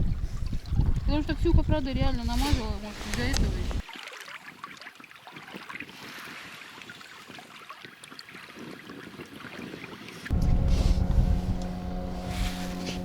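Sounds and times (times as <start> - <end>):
water lapping: 10.3 - 13.0.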